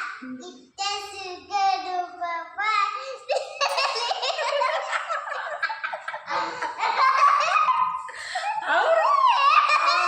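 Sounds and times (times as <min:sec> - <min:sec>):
young children giggling: 0:03.3 - 0:10.0.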